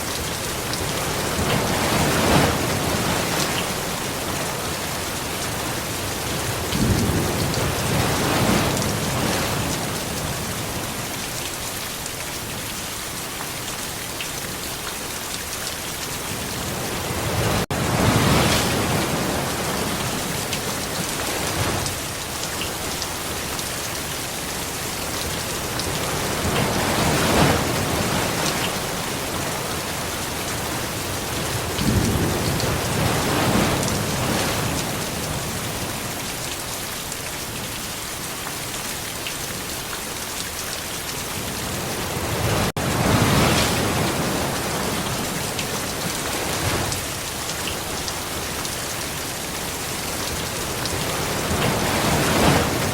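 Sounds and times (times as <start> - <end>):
steady rain: 0.0 - 52.9
low rumbles of thunder: 6.4 - 10.5, 31.3 - 35.8.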